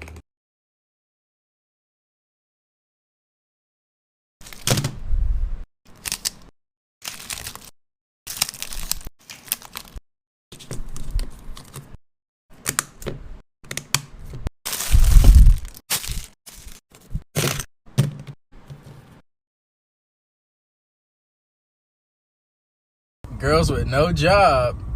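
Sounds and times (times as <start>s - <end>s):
packaging crinkling: 5.9s - 10.0s, 14.7s - 16.8s.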